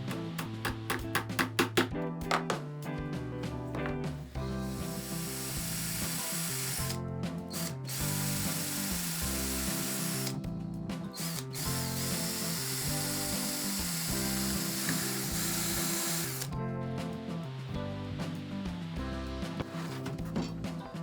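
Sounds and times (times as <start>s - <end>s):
background music with bass line: 0.0s - 21.0s
power tool ratcheting: 4.7s - 10.4s, 11.2s - 16.5s.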